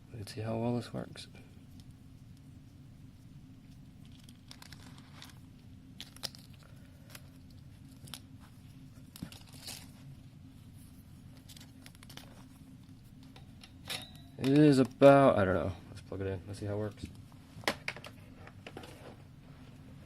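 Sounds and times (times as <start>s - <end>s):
steady low hum: 0.0s - 20.0s
plastic packaging crinkling: 4.0s - 10.1s, 11.3s - 12.5s.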